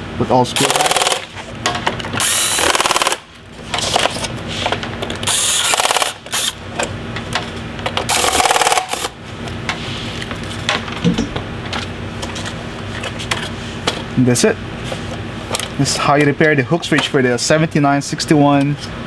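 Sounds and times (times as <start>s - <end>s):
electric screwdriver ticking: 0.6s - 1.2s, 2.2s - 3.2s, 5.2s - 6.6s, 8.1s - 9.1s.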